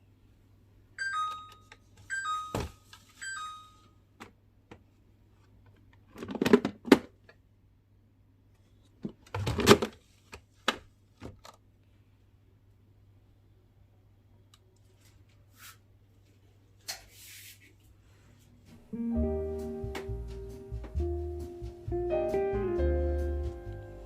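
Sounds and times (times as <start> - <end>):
household items knocking and clattering: 6.1 - 7.1.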